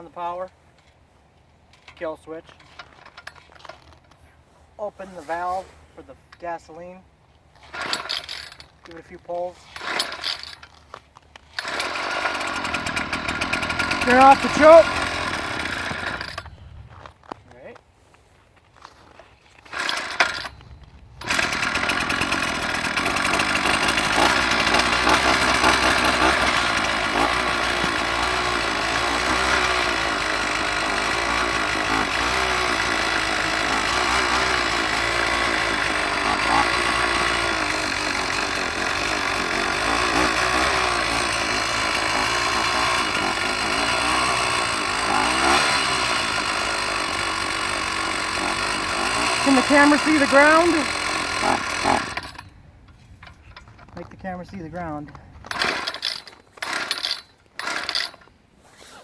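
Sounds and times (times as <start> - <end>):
ice auger engine running: 7.7 - 8.6, 9.7 - 10.6, 11.6 - 16.6, 19.6 - 52.6, 54.1 - 58.2.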